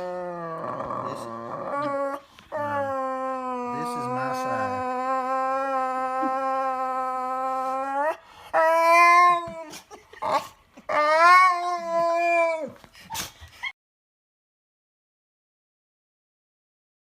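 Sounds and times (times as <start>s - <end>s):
dog howling: 0.0s - 12.8s.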